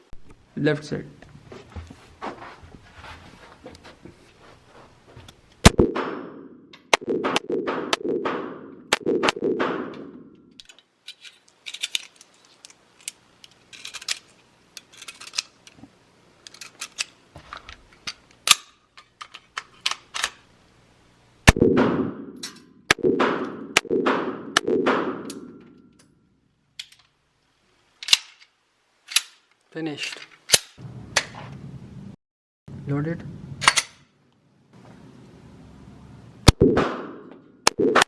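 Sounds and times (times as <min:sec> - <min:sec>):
gunshots echoing: 0:05.7 - 0:10.5, 0:21.5 - 0:25.8, 0:36.5 - 0:38.0.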